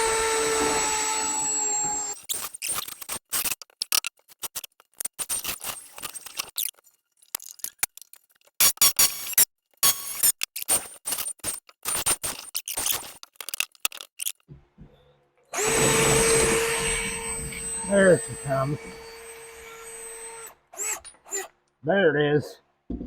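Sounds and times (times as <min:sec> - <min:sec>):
cordless drill whining: 0:00.0 - 0:02.3, 0:15.5 - 0:21.6.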